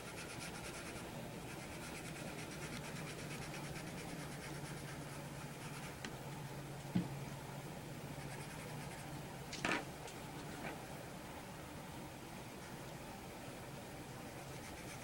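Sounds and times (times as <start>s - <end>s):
pencil shading on paper: 0.0s - 6.0s, 8.2s - 9.0s, 14.3s - 15.0s.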